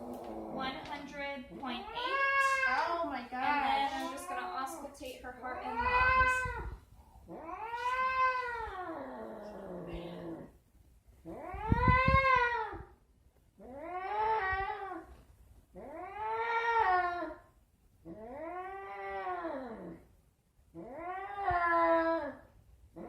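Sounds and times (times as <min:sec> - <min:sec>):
cat yowling: 0:01.8 - 0:02.9, 0:05.6 - 0:10.4, 0:11.3 - 0:12.9, 0:15.8 - 0:17.4.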